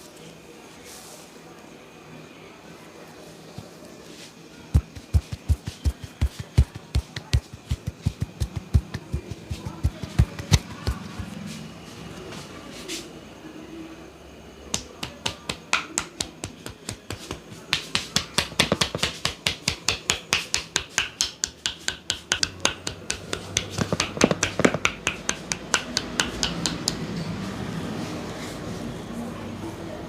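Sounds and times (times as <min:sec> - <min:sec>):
hands slapping in massage: 0:04.7 - 0:11.4, 0:14.7 - 0:27.0.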